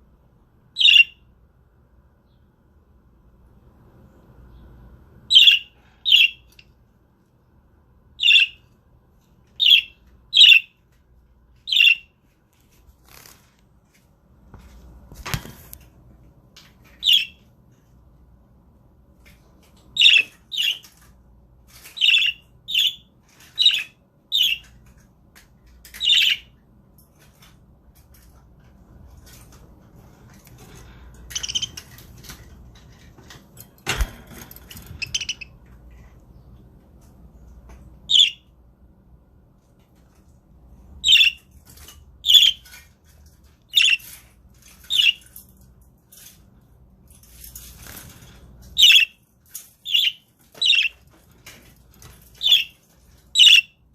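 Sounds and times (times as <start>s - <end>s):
budgerigars chirping: 0.8s - 1.2s, 5.3s - 6.5s, 8.2s - 8.6s, 9.6s - 10.7s, 11.7s - 12.1s, 17.0s - 17.4s, 20.0s - 20.8s, 22.0s - 24.7s, 31.3s - 31.8s, 35.0s - 35.5s, 38.1s - 38.4s, 41.0s - 41.4s, 42.2s - 42.6s, 43.7s - 44.1s, 44.9s - 45.2s, 48.8s - 49.2s, 49.8s - 51.0s, 52.4s - 52.8s, 53.4s - 53.8s.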